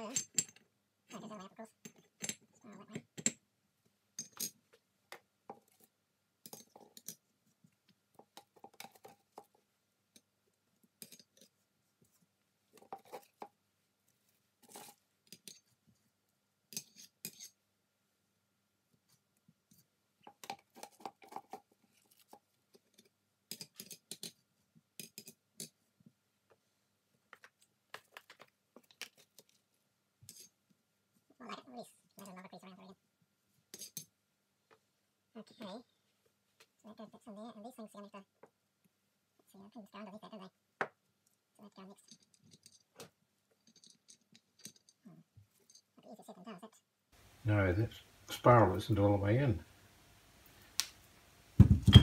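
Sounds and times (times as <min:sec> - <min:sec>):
metal parts clinking: 0:43.6 - 0:45.0.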